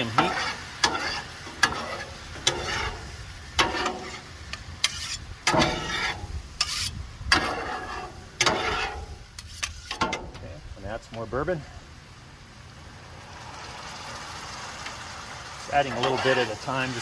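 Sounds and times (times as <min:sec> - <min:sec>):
spatula scraping a steel griddle: 0:00.0 - 0:10.4, 0:15.7 - 0:17.0
sauce sizzling and boiling: 0:00.0 - 0:17.0.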